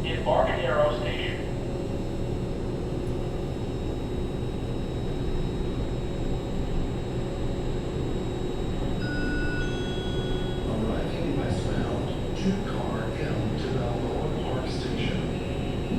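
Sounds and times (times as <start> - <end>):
station rumble and hiss: 0.0 - 15.9
thin high steady tone: 9.0 - 11.5.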